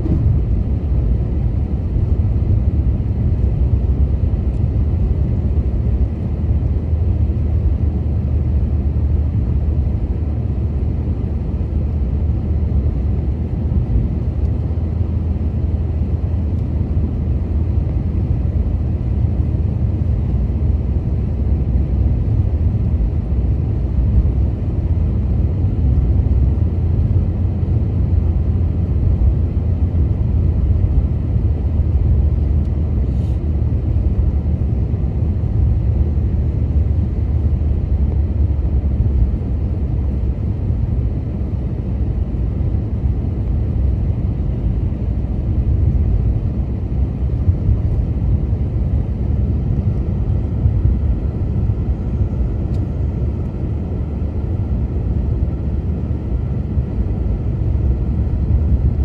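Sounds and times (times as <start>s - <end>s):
car engine and road rumble: 0.0s - 59.0s.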